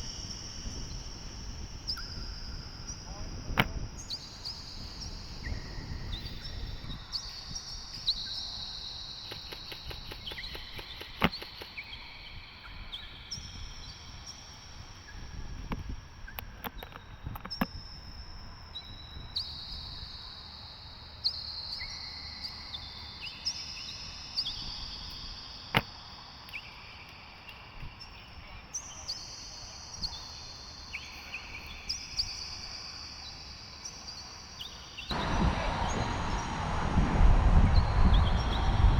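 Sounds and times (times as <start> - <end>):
wind buffeting microphone: 0.0 - 8.2, 9.2 - 14.2, 35.1 - 38.9
small birds chirping: 0.0 - 15.6, 18.7 - 36.9
faint high-pitched hum: 0.0 - 38.9
high thin chirps: 7.1 - 12.4
quick run of ticks: 9.1 - 12.0
sharp click: 9.3 - 11.7
held whistling tones: 35.1 - 38.9.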